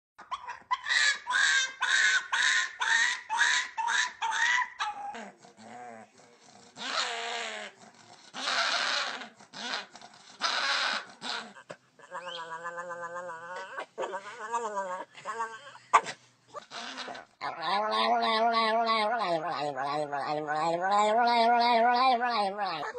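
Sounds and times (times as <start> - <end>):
dog making rough calls: 0.2 - 22.9
dog whining: 8.4 - 22.9.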